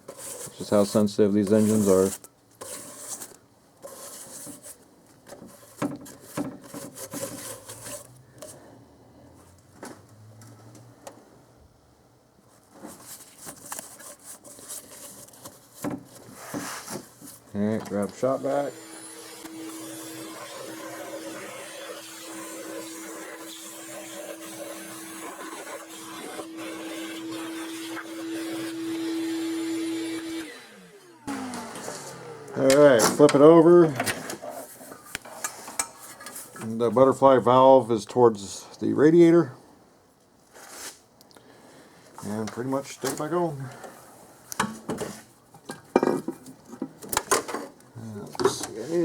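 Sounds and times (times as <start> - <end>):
rubbing and scraping strokes: 0.0 - 8.6, 12.5 - 17.5, 19.6 - 28.8
shop vacuum running: 18.0 - 34.1.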